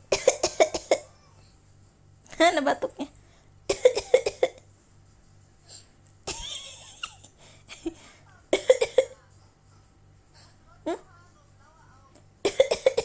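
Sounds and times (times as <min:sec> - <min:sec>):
child coughing: 0:00.1 - 0:01.2, 0:03.7 - 0:04.6, 0:06.3 - 0:09.2, 0:12.4 - 0:13.0.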